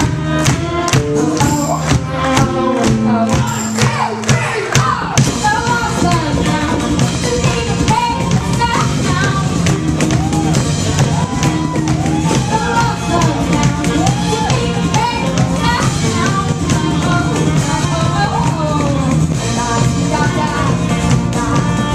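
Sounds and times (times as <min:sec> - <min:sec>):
steady drum beat: 0:00.0 - 0:21.9
person singing: 0:11.1 - 0:21.9.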